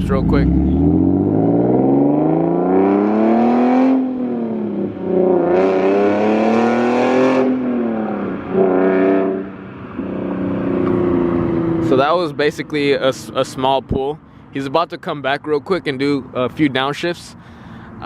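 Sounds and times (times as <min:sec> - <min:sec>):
car engine accelerating hard: 0:00.0 - 0:12.3.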